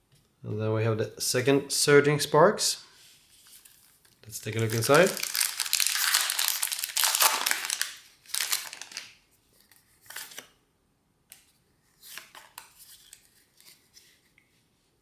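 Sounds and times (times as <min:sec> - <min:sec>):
foil wrapper tearing and crinkling: 0:04.4 - 0:09.2.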